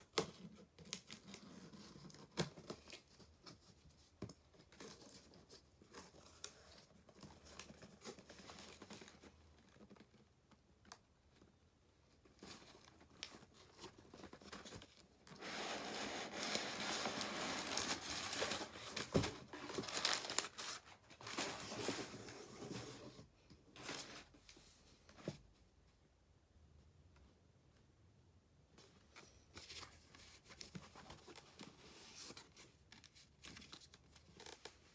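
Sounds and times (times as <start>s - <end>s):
paper packaging crinkling: 12.4s - 22.4s.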